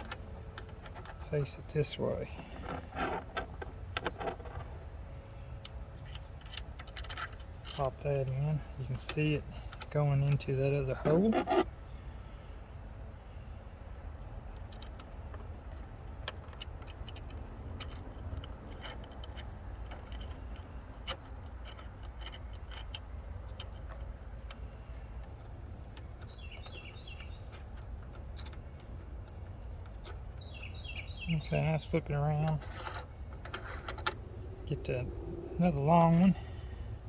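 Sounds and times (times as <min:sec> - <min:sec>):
metal parts clinking: 0:00.0 - 0:04.7, 0:05.6 - 0:08.3, 0:14.5 - 0:30.7, 0:31.3 - 0:36.8
bird chirping: 0:24.4 - 0:28.0, 0:28.7 - 0:37.0
low rumble: 0:33.0 - 0:37.0.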